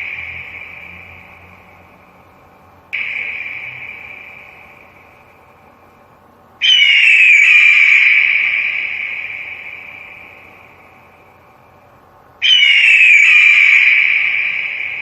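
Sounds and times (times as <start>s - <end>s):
eagle screaming: 6.6s - 9.6s, 12.4s - 15.0s.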